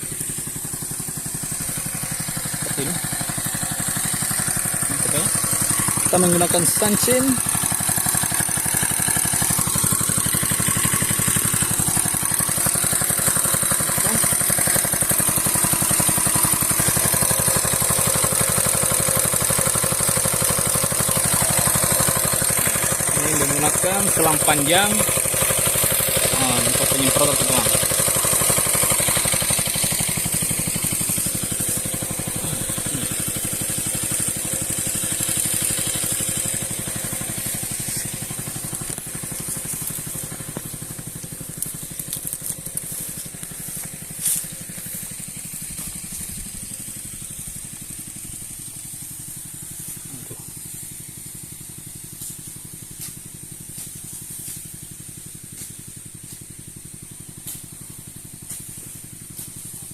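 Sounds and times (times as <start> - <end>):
small engine running: 0.0 - 59.9
spray hissing from nozzle: 20.1 - 42.0, 42.6 - 59.9.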